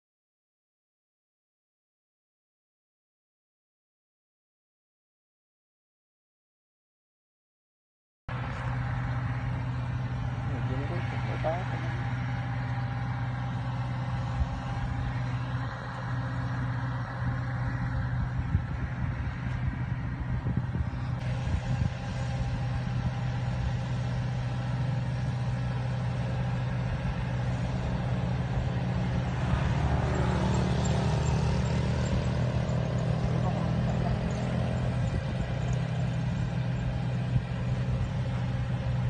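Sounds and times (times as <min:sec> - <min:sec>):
vehicle engine hum: 0:08.3 - 0:39.0.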